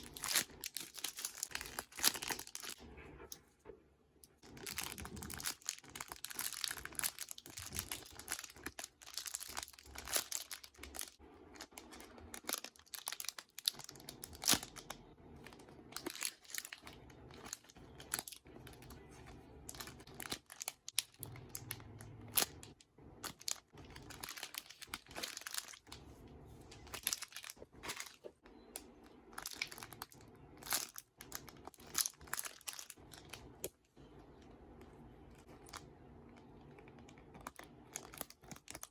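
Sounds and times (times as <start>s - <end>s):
crinkling and crackling: 0.0s - 38.9s
squishy toys being squeezed: 4.4s - 19.0s.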